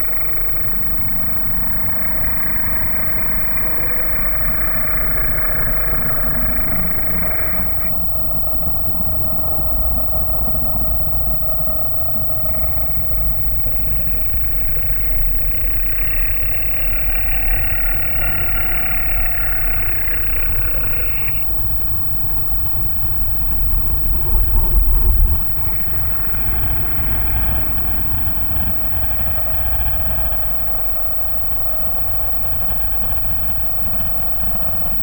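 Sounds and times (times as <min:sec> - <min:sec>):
dark layered drone: 0:00.0 - 0:35.0
monster growl: 0:13.7 - 0:21.5.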